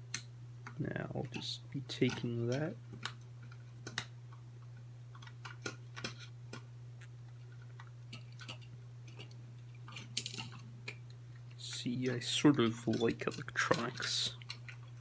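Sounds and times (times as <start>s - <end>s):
steady low hum: 0.0s - 15.0s
plastic parts clicking: 0.1s - 4.1s, 5.1s - 6.7s.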